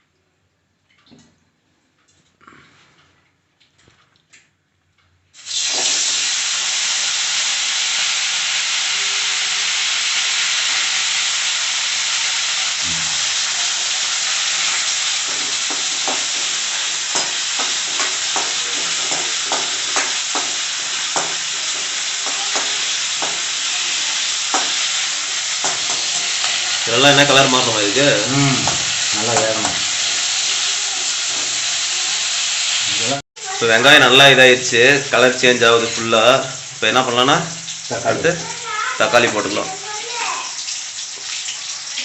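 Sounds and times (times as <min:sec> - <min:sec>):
oil sizzling in a pan: 0:05.3 - 0:42.0
spoon scraping a pan: 0:12.9 - 0:26.8.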